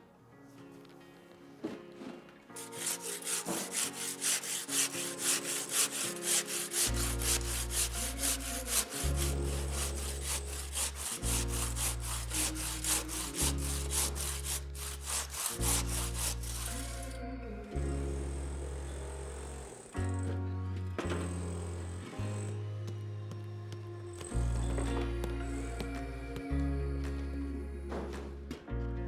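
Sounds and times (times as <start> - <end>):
handsaw sawing through stone: 2.6 - 17.2.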